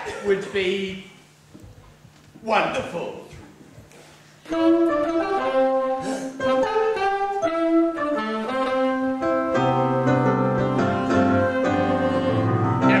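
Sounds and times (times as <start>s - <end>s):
melody over keyboard accompaniment: 4.5s - 13.0s.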